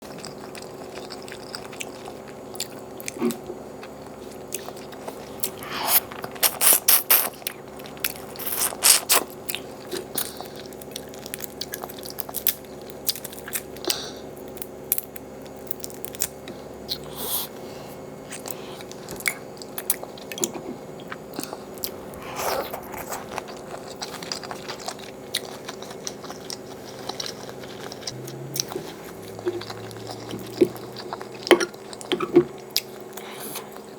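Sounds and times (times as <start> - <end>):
faint steady hum: 0.0 - 33.9
crunchy bites: 4.4 - 17.0
soft chewing clicks: 18.3 - 33.9.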